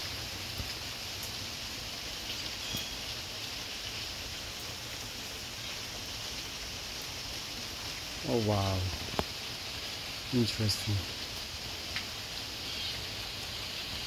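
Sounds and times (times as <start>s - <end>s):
heavy rain pouring: 0.0s - 14.0s
raindrop ticks: 0.4s - 1.4s, 8.2s - 14.0s.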